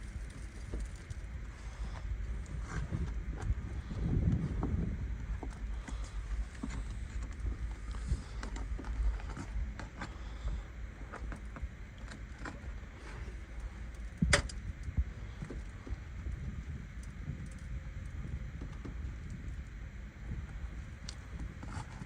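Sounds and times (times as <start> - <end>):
clicks and scrapes on roof shingles: 0.0 - 14.6, 21.0 - 22.0
low rumble: 0.0 - 22.0.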